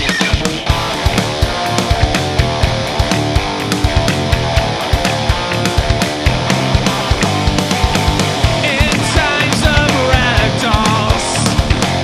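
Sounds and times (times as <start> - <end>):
heavy metal song: 0.0 - 12.0.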